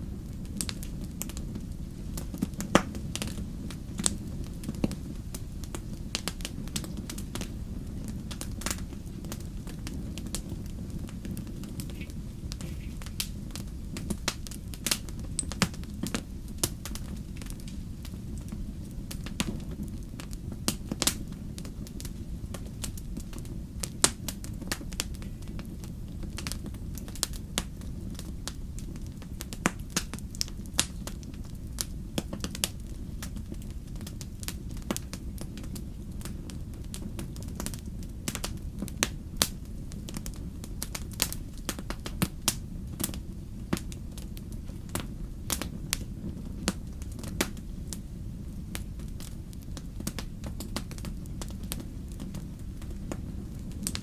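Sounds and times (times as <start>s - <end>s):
campfire crackling and popping: 0.0s - 54.0s
low rumble of fire: 0.0s - 54.0s.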